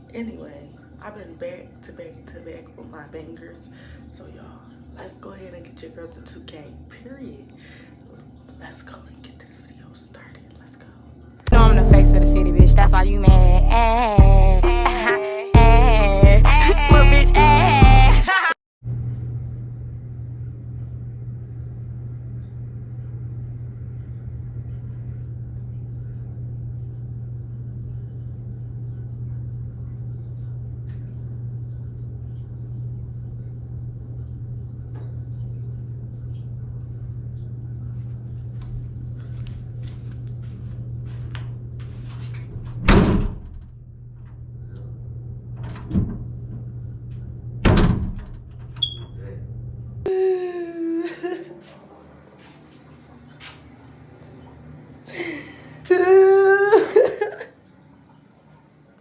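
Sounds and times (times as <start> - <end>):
low hum: 10.9 - 18.3, 18.9 - 56.7
door banging shut: 42.8 - 43.7, 45.6 - 46.3, 47.6 - 48.8.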